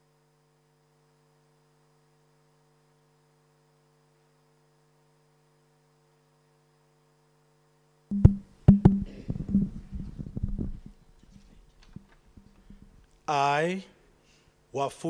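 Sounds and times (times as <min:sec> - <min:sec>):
faint steady hum: 0:00.0 - 0:15.0
microphone handling knocks: 0:08.1 - 0:13.0.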